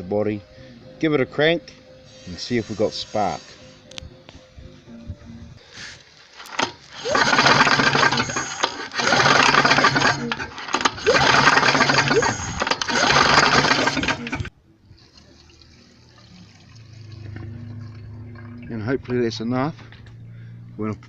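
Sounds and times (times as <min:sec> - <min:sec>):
mower engine pull-cord cranking: 0:06.4 - 0:14.5.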